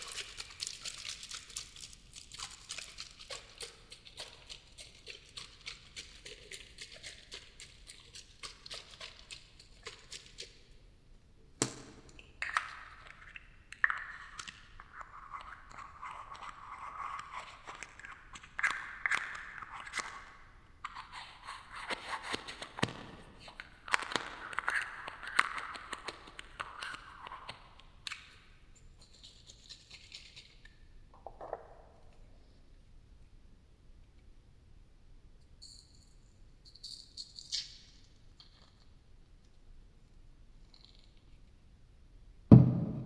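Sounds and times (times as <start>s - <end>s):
crinkly scratching and rustling: 0.0s - 9.4s.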